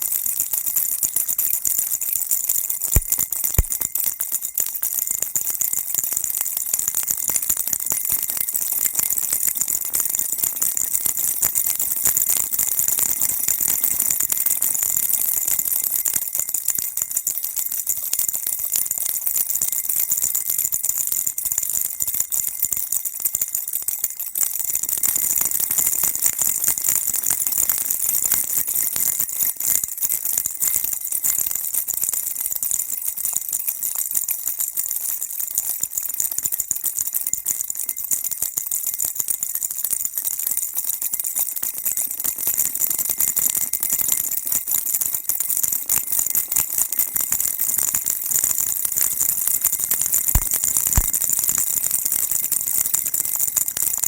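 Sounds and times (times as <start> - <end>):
baby rattle shaking: 0.0 - 5.6, 47.1 - 52.4.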